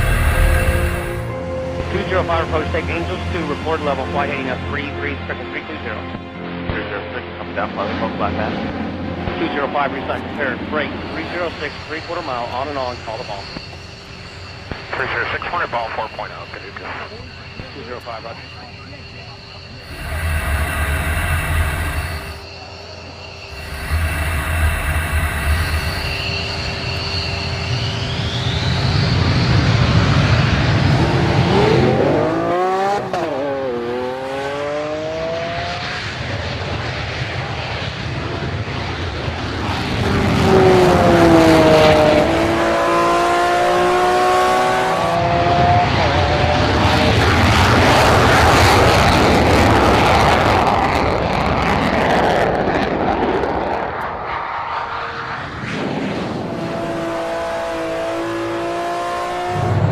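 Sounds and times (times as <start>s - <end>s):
vehicle engine accelerating hard: 0.0s - 5.0s, 19.8s - 22.5s, 23.4s - 36.4s, 39.7s - 50.8s, 56.3s - 59.9s
engine with falling pitch: 0.0s - 6.0s, 17.1s - 36.8s, 39.3s - 59.9s.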